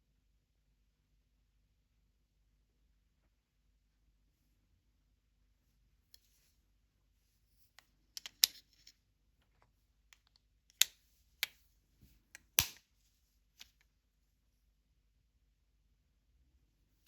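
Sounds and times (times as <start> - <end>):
earbud case clicks and taps: 12.4 - 12.8.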